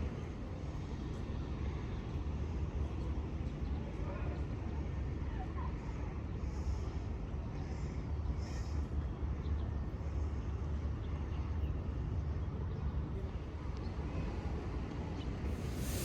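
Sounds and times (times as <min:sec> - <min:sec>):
steady low rumble: 0:15.5 - 0:16.0.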